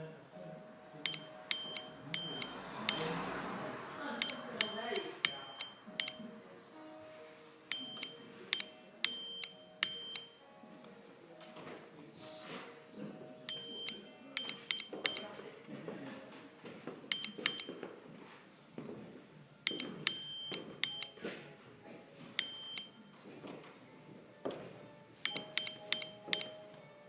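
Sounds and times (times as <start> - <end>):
sharp clicks: 1.1 - 3.1, 4.2 - 6.2, 7.7 - 10.3, 13.5 - 15.3, 17.1 - 17.7, 19.7 - 21.2, 25.3 - 26.6
morse code beeps: 1.1 - 3.2, 4.2 - 6.2, 7.7 - 10.4, 13.5 - 15.3, 17.1 - 17.8, 19.7 - 21.2, 22.4 - 23.1, 25.2 - 26.7.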